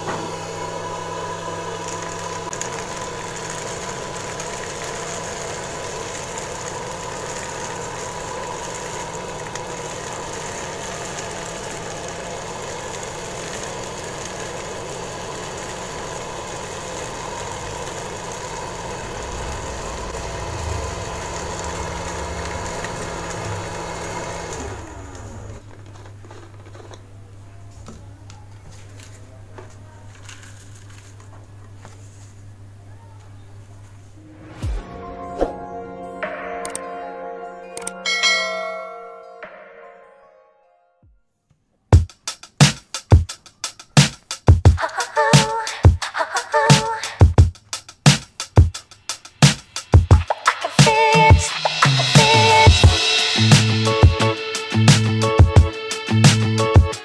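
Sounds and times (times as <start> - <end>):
small motor running: 0.0 - 25.7.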